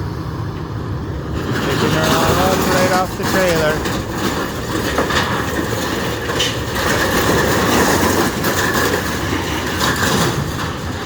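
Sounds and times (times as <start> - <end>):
scrap metal clanking and scraping: 1.3 - 11.0
grapple machine running: 1.4 - 11.0.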